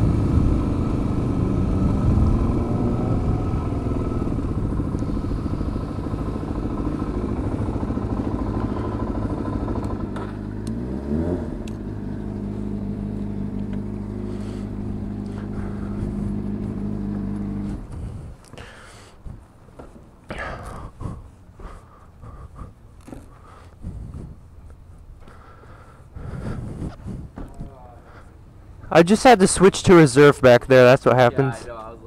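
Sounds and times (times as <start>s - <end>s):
wind noise: 0.0s - 7.7s, 17.6s - 18.4s, 23.8s - 25.2s, 26.2s - 27.8s
motorcycle engine running: 0.0s - 19.9s.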